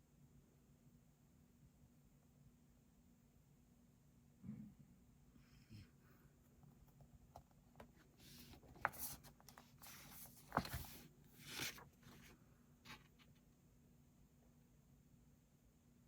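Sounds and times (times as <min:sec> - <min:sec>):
paper rustling: 0:08.2 - 0:13.4.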